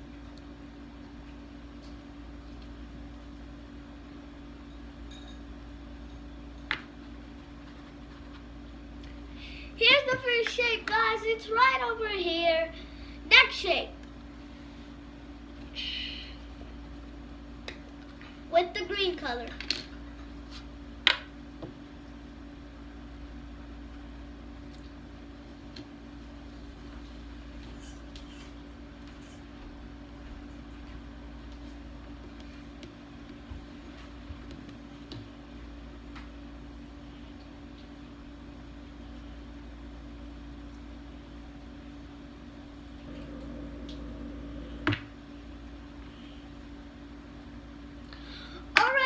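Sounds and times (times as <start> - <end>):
low room hum: 0.0 - 49.0
steady low hum: 35.5 - 49.0.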